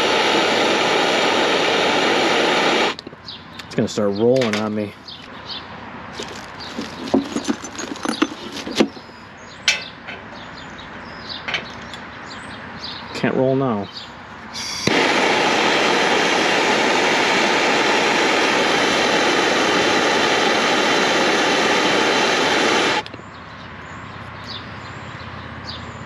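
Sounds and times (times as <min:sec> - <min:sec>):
soldering torch hissing: 0:00.0 - 0:03.0, 0:14.6 - 0:23.1.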